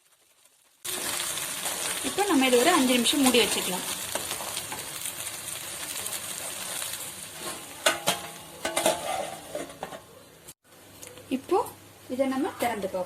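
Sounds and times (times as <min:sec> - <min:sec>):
paste sizzling in oil: 0:00.0 - 0:09.6.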